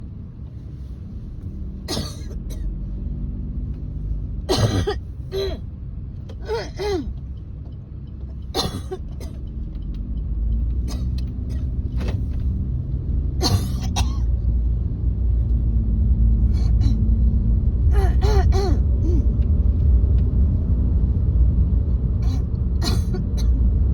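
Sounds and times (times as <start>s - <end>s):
car driving rumble: 0.0s - 23.9s
chesty coughing: 1.9s - 2.6s, 4.5s - 5.6s, 6.4s - 7.2s, 8.6s - 9.4s, 13.4s - 14.3s, 18.0s - 19.3s, 22.2s - 23.6s.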